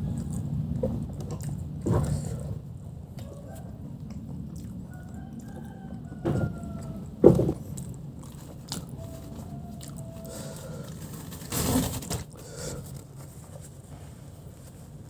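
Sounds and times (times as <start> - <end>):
chewing crunchy fried chicken: 0.0 - 11.5.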